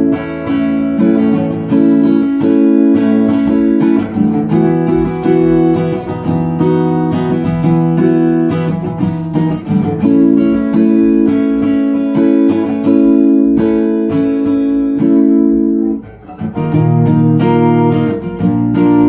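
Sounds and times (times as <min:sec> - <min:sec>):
acoustic guitar strummed chords: 0:00.0 - 0:19.0.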